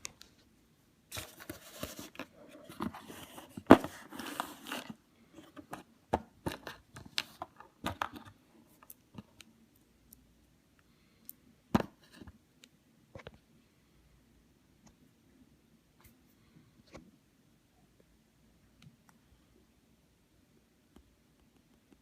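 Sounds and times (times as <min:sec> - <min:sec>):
packaging rustling and crinkling: 0:01.1 - 0:05.8.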